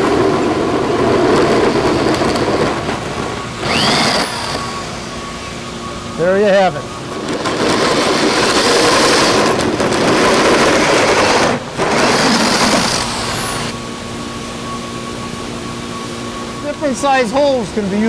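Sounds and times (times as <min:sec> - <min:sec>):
power drill cutting with hole saw: 0:01.1 - 0:05.7, 0:07.2 - 0:13.8.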